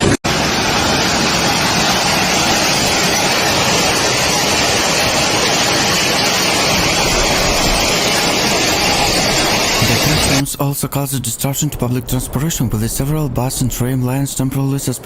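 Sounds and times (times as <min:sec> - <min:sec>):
hail and heavy rain pelting: 0:00.3 - 0:10.5.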